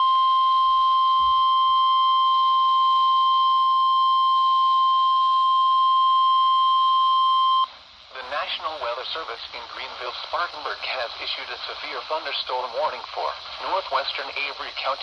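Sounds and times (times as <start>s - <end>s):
long steady alarm beep: 0.0s - 7.8s
light static hiss: 0.0s - 15.0s.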